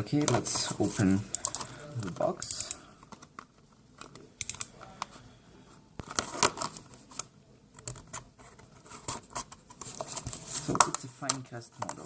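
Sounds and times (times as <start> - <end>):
box packaging clicks and rustles: 6.0 - 12.0.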